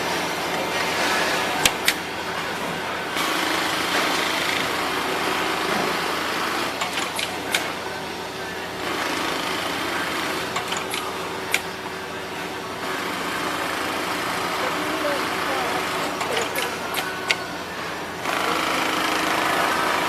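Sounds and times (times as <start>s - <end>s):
sewing machine whirring: 3.1s - 7.8s, 8.8s - 11.7s, 12.8s - 17.5s, 18.1s - 20.0s.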